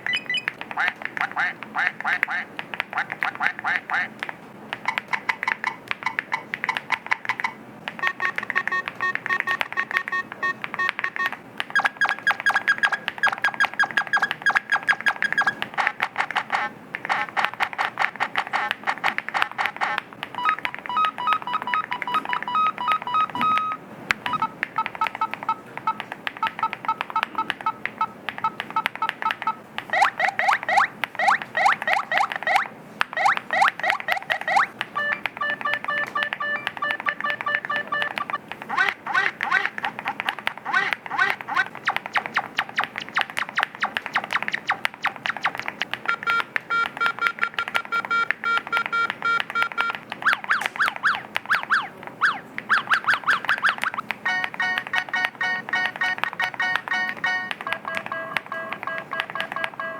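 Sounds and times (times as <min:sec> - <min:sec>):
short electronic beeps: 0:00.0 - 0:00.5, 0:07.4 - 0:15.6, 0:19.8 - 0:32.6, 0:33.2 - 0:38.9, 0:41.8 - 0:59.9
mechanical keyboard typing: 0:00.0 - 0:59.9.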